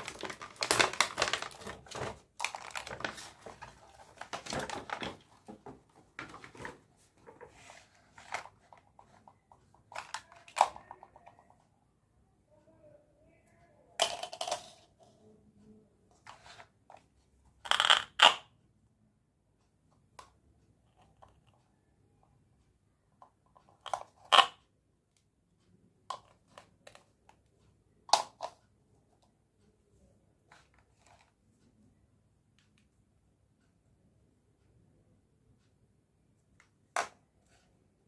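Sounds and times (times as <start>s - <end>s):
toy tableware clicking and clattering: 9.8s - 11.5s, 14.0s - 15.0s, 17.7s - 18.5s, 23.6s - 24.6s, 28.1s - 28.6s.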